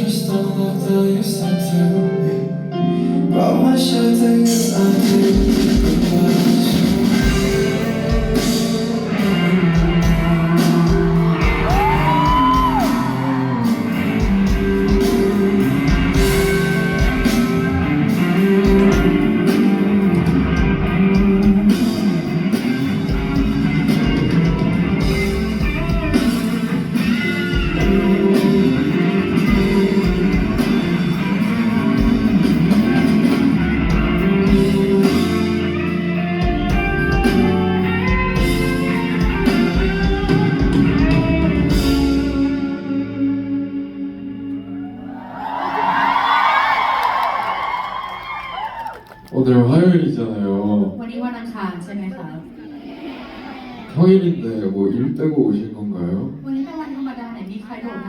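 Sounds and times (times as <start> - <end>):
person singing: 0.0 - 23.1, 24.1 - 44.6
live rock band playing: 0.0 - 48.1
shouted voices: 10.5 - 14.4, 44.9 - 49.4.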